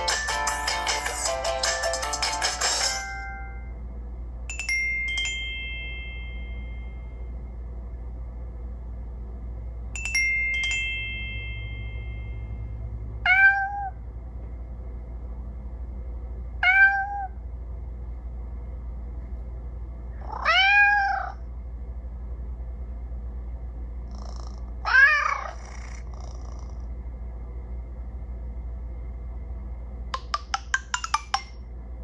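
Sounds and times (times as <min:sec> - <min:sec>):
cat meow ringtone: 0:13.2 - 0:14.0, 0:16.6 - 0:17.3, 0:20.4 - 0:21.4.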